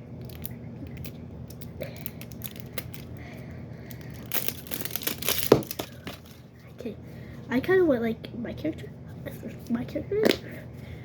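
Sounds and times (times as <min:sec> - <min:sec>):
plastic crinkling: 0:00.2 - 0:03.3, 0:03.9 - 0:06.4
toy packaging clicks and rustles: 0:00.2 - 0:03.3, 0:03.9 - 0:06.4.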